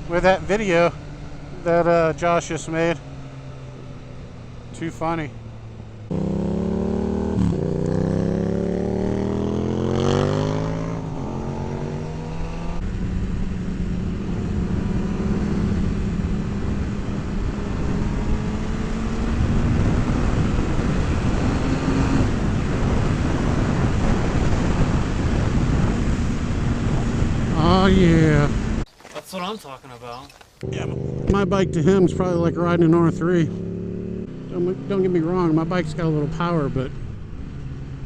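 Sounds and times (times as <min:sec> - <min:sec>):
motorcycle engine accelerating: 0:00.0 - 0:28.9, 0:30.6 - 0:38.0
heavy wind noise: 0:05.7 - 0:28.9.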